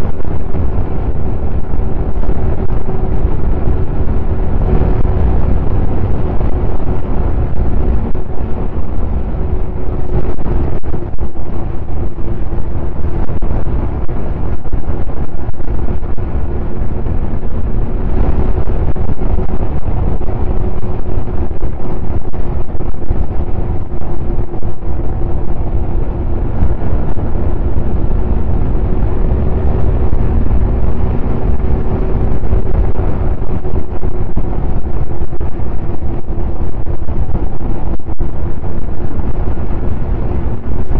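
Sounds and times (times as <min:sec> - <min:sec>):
snowmobile engine running: 0:00.0 - 0:40.9
wind rumble on microphone: 0:00.0 - 0:40.9.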